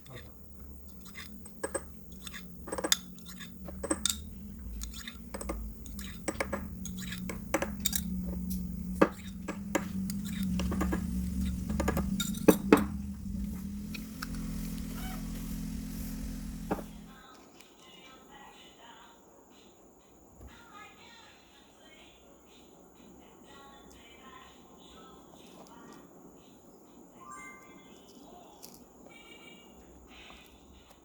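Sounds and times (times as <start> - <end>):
dishes and cutlery clinking: 0.0 - 13.0
steady low hum: 0.0 - 17.2.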